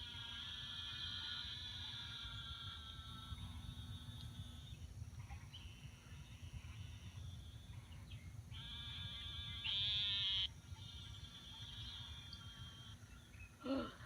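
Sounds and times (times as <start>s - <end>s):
drawn-out animal calls: 0.0s - 3.9s, 8.5s - 13.0s.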